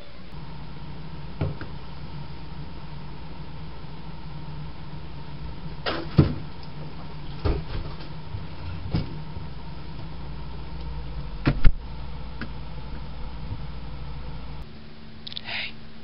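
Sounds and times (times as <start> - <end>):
refrigerator hum: 0.0 - 16.0
knocks and clunks: 5.8 - 9.5.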